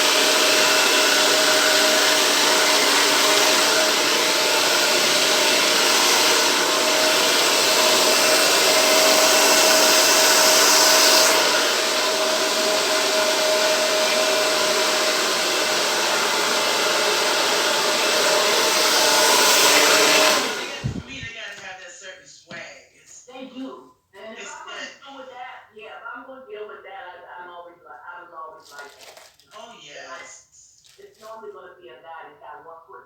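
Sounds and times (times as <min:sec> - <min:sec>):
hair dryer blowing: 0:00.0 - 0:21.4.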